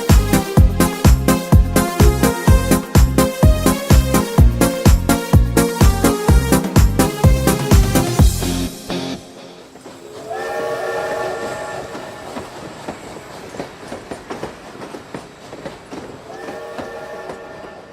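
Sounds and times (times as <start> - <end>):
train wheels clattering on rails: 0.0 - 17.9
train horn blast: 10.0 - 12.6, 16.3 - 17.9.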